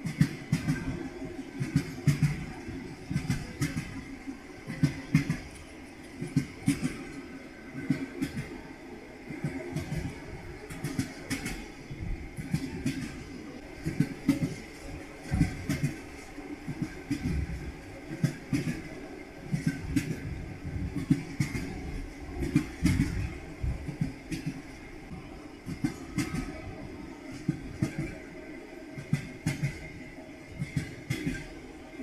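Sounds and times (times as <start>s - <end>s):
train running rumble: 0.0s - 32.0s
train wheels clacking on rail joints: 0.0s - 32.0s.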